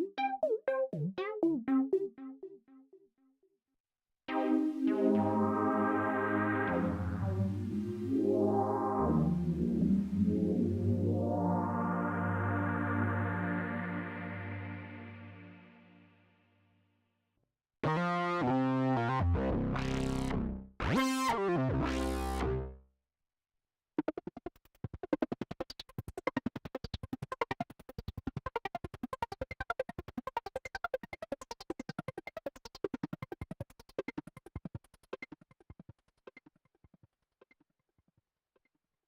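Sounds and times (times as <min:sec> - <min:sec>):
fast plucked synth notes: 0:00.0 - 0:02.8.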